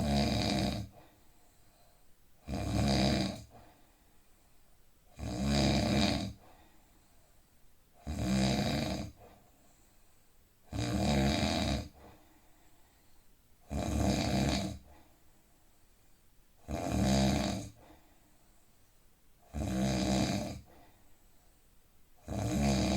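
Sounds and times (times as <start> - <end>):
person snoring: 0.0 - 1.0, 2.4 - 3.6, 5.2 - 6.4, 8.0 - 9.2, 10.7 - 12.0, 13.7 - 14.9, 16.7 - 17.8, 19.5 - 20.7, 22.2 - 22.9
quiet breathing: 0.0 - 16.7, 17.5 - 22.9.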